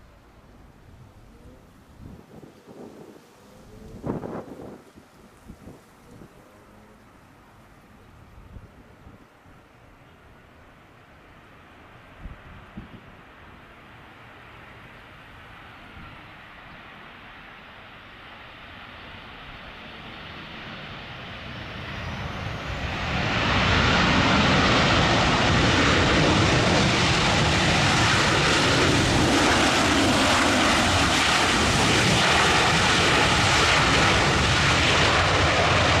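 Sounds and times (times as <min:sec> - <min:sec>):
jet engines roaring: 0:13.3 - 0:36.0.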